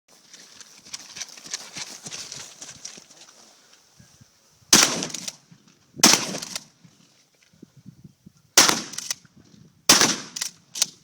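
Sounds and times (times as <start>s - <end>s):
shotgun shots with echo: 4.7s - 5.3s, 6.0s - 6.6s, 8.6s - 9.1s, 9.9s - 10.5s.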